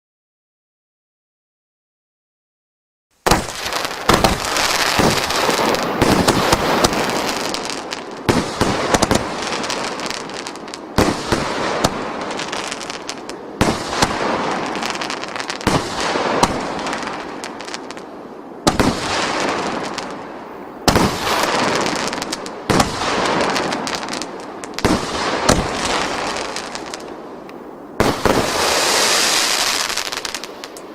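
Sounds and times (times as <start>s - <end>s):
firework launch thumps: 3.2s - 7.6s
firework aerial bursts: 3.2s - 30.9s
firework crackling: 3.2s - 30.9s.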